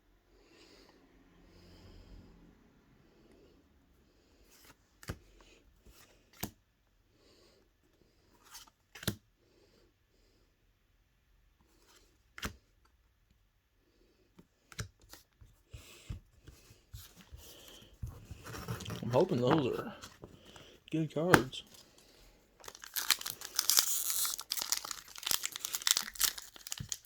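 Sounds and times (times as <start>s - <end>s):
faint breathing: 15.7s - 18.9s, 20.0s - 20.9s
trading cards clicking and snapping: 21.2s - 21.6s.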